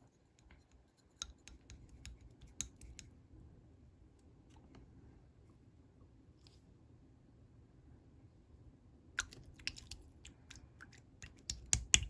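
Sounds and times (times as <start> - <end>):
slime clicking and popping: 11.3 - 12.0.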